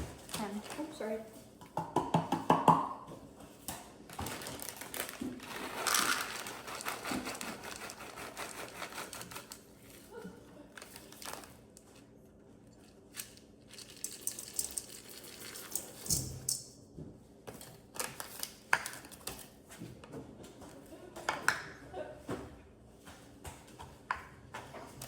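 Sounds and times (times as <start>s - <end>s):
rustling and crinkling: 0.0s - 1.6s, 3.5s - 16.5s
kitchen utensils clicking: 13.2s - 16.7s.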